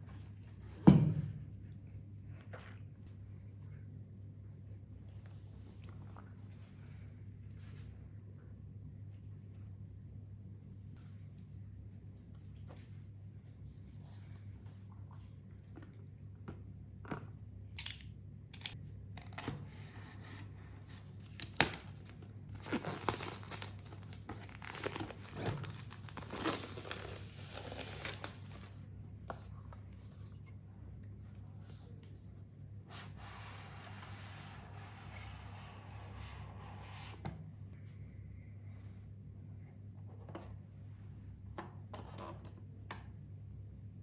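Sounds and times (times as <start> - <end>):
wrapping crinkling and tearing: 18.6 - 19.6, 21.2 - 28.8.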